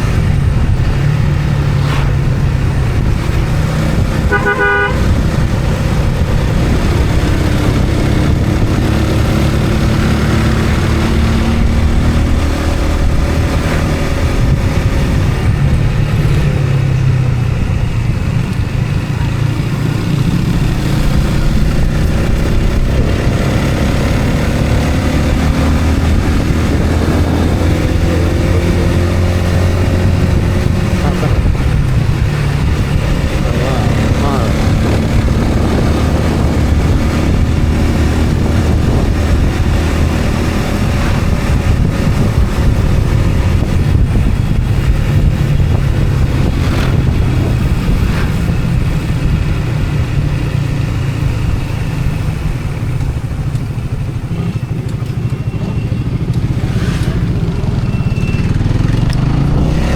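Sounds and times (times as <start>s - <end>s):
vehicle engine running: 0.0s - 59.9s
horn toot: 4.0s - 5.4s.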